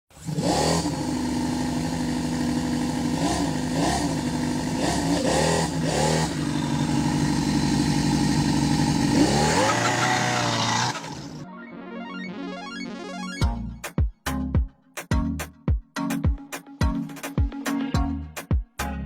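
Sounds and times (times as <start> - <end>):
remote-control car engine revving: 0.1 - 11.4.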